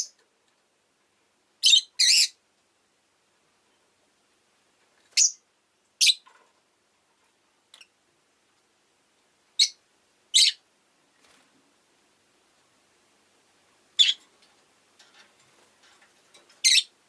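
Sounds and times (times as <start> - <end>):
lovebird chirping: 1.6 - 2.4, 5.2 - 5.4, 6.0 - 6.2, 9.6 - 10.6, 14.0 - 14.2, 16.6 - 16.9.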